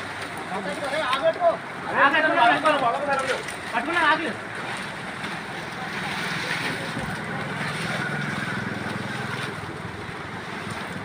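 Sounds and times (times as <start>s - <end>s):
outdoor noise: 0.0s - 11.0s
low engine-like hum: 3.3s - 11.0s.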